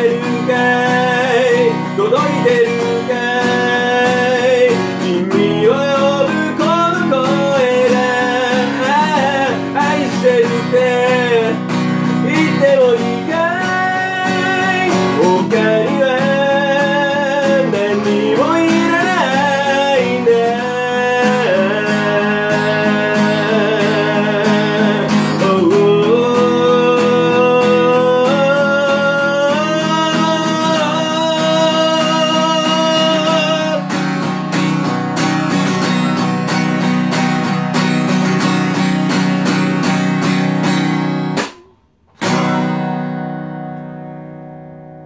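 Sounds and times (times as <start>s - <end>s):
person singing wordless notes: 0.0s - 33.9s
strummed acoustic guitar: 0.0s - 45.0s.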